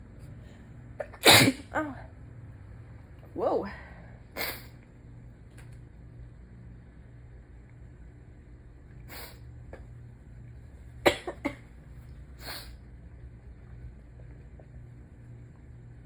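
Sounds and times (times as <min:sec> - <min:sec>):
person sneezing: 0:01.0 - 0:02.0, 0:04.4 - 0:04.8, 0:12.4 - 0:12.8.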